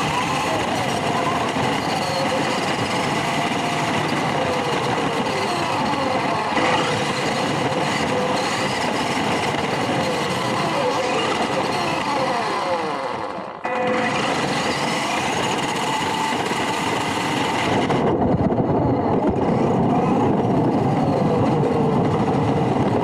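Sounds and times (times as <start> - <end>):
toy truck motor whining: 0.0 - 18.0.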